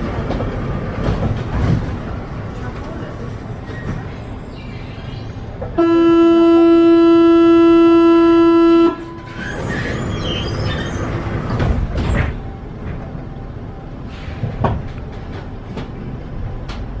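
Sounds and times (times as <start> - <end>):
train rumble: 0.0 - 17.0.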